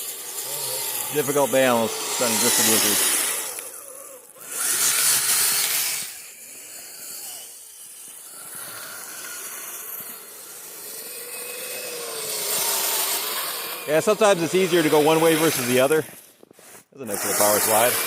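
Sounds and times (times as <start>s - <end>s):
plastic tracks scraping through snow: 0.0s - 3.7s, 8.2s - 18.0s
electric motors whining: 0.0s - 18.0s.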